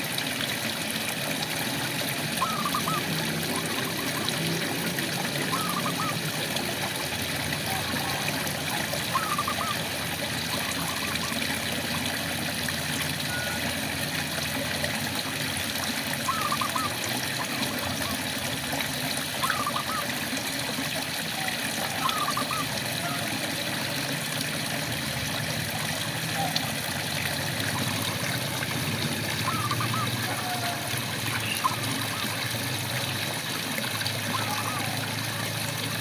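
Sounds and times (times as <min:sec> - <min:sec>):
frogs chirping: 0:09.1 - 0:09.7, 0:29.4 - 0:30.6.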